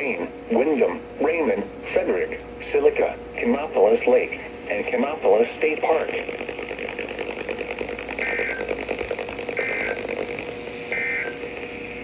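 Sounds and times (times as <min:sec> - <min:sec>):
crackling radio static: 0:00.0 - 0:12.0
steady hum: 0:00.0 - 0:12.0
buzzy two-tone digital chirps: 0:05.7 - 0:12.0.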